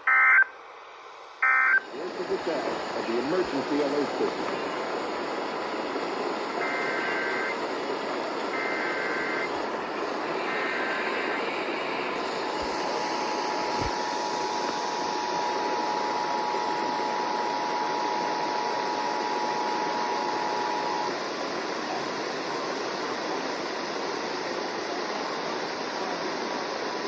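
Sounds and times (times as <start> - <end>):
constant hiss: 0.0 - 26.9
two-tone alert signal: 1.4 - 1.8.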